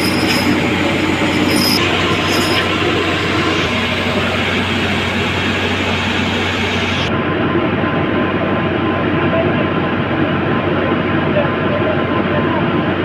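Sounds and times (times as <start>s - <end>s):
diesel machinery running: 0.0s - 13.0s.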